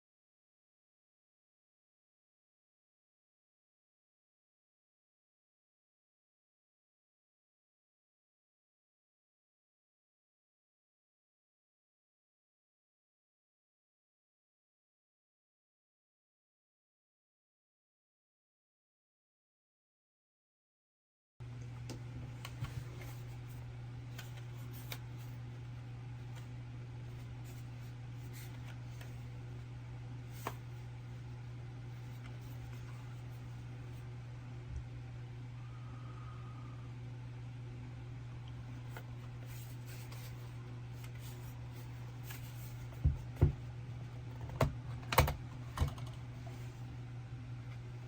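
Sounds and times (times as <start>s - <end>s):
steady low hum: 21.4s - 48.0s.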